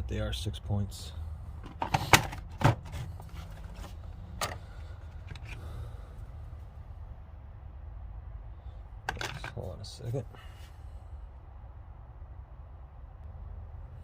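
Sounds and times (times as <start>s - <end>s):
steady low hum: 0.0s - 14.0s
metal sockets clicking and knocking: 9.1s - 9.6s.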